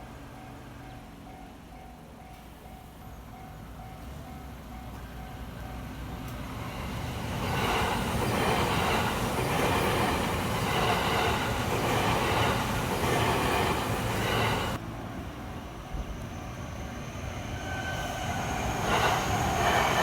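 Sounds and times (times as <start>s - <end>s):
train wheels on rails: 0.2s - 14.9s, 15.6s - 20.0s.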